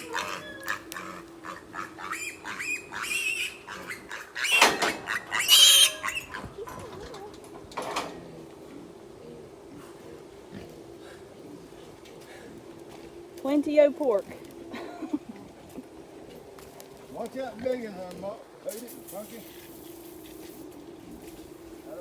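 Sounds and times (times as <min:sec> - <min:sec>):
pigs grunting and squealing: 0:00.0 - 0:13.0
steady low hum: 0:00.0 - 0:22.0.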